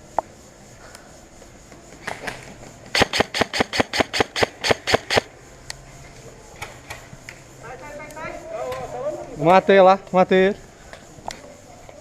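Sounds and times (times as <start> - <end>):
airsoft gun shots: 2.0 - 5.3.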